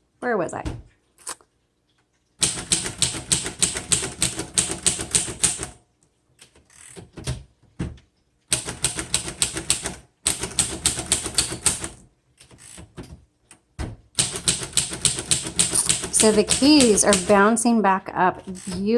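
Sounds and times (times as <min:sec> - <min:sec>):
typewriter keys clacking: 0:08.6 - 0:12.0, 0:14.2 - 0:17.5.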